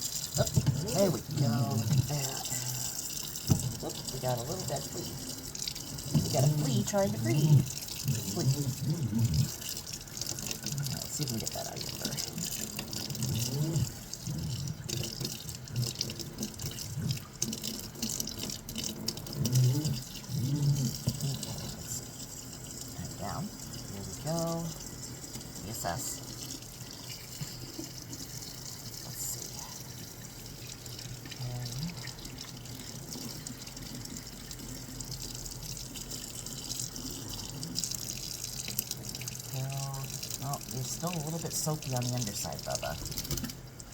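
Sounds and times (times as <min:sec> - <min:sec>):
faucet water splashing: 0:00.0 - 0:43.9.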